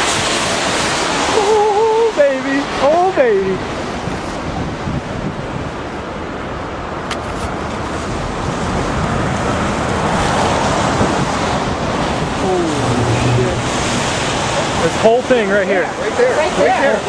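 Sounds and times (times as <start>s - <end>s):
wind buffeting microphone: 3.5s - 16.6s.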